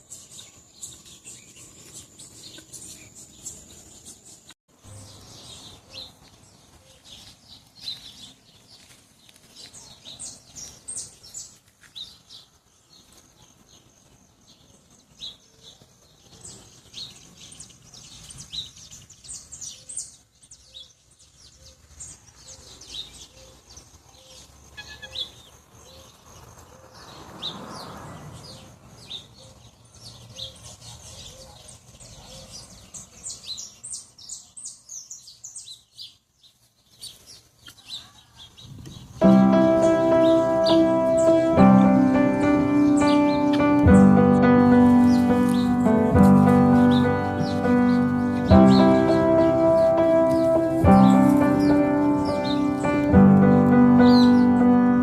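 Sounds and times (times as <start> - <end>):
small birds chirping: 0.0 - 55.0.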